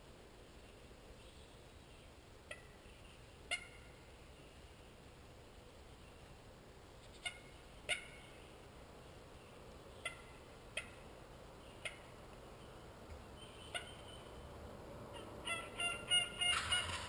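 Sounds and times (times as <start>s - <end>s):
turkey gobbling: 3.5s - 3.9s, 7.2s - 8.3s, 10.0s - 11.0s, 11.8s - 12.1s, 13.6s - 14.2s, 15.1s - 17.0s
turkey short sharp calls: 15.1s - 17.0s.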